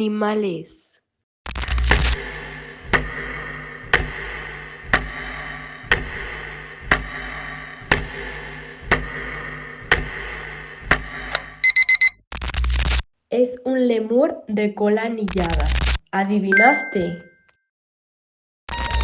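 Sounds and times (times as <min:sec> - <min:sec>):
countdown clock ticking: 0:02.9 - 0:03.3, 0:03.9 - 0:04.3, 0:05.9 - 0:06.3, 0:06.9 - 0:07.2
electronic alarm beep: 0:11.6 - 0:12.2, 0:16.5 - 0:17.4.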